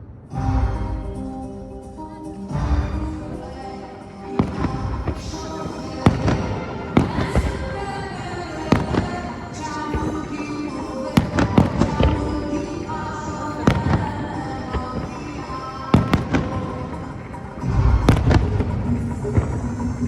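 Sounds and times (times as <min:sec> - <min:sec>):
music with heavy bass: 0:00.4 - 0:01.9, 0:17.6 - 0:20.0
fireworks bangs: 0:04.3 - 0:19.8.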